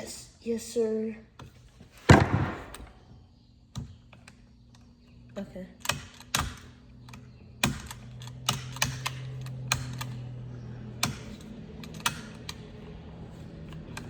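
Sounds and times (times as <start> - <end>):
pliers clicking and knocking: 5.8 - 10.4, 11.0 - 12.7.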